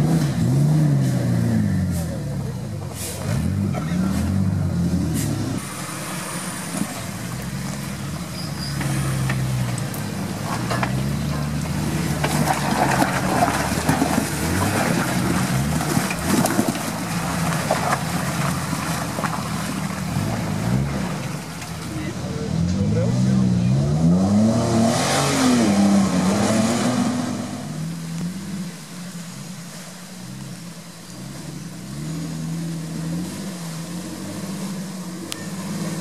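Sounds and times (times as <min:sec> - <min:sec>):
engine revving: 0:00.0 - 0:28.9, 0:31.1 - 0:36.0
knocks and rattles: 0:08.7 - 0:20.0.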